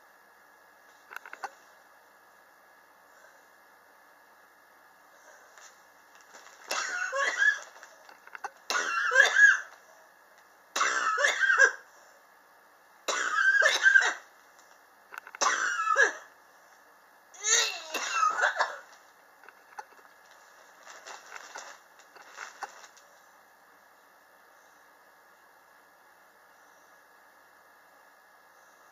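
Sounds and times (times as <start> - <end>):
person coughing: 6.7 - 7.7, 8.7 - 9.7, 10.8 - 11.8, 13.1 - 14.3, 15.4 - 16.3, 17.4 - 18.9.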